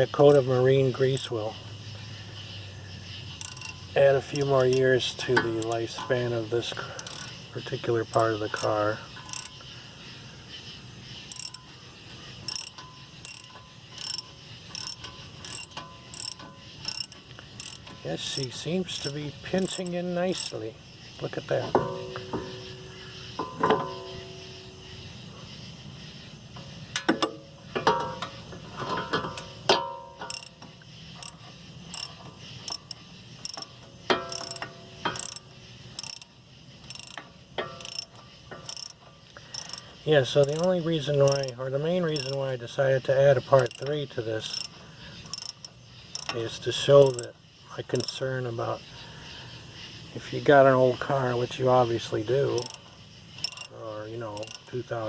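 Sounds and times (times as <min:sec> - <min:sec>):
socket ratchet clicking: 0:03.0 - 0:20.6, 0:26.9 - 0:42.5, 0:43.4 - 0:47.3, 0:52.5 - 0:53.8, 0:54.4 - 0:54.7
sharp metal clanks: 0:03.4 - 0:07.5, 0:10.4 - 0:25.0, 0:26.6 - 0:39.8.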